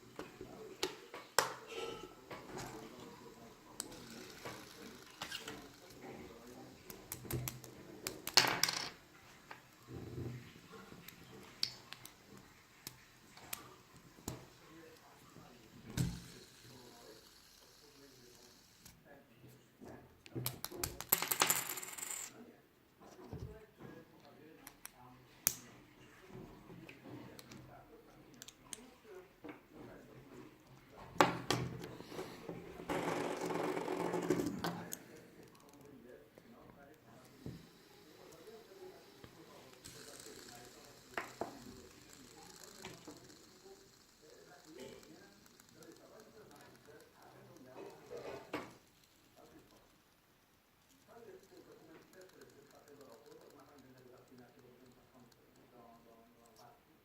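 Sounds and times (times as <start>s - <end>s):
fidget spinner clicks: 39.6s - 48.0s
plastic fidget spinner clicks: 39.7s - 43.6s.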